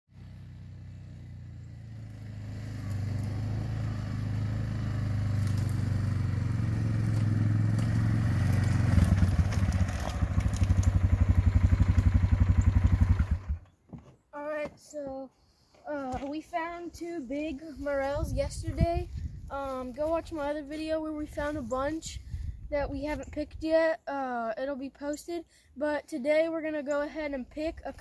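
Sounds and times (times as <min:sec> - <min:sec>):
engine running: 0:00.2 - 0:13.8.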